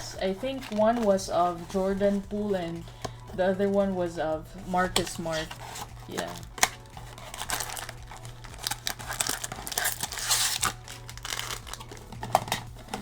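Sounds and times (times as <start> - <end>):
packaging tearing and crinkling: 5.3 - 13.0.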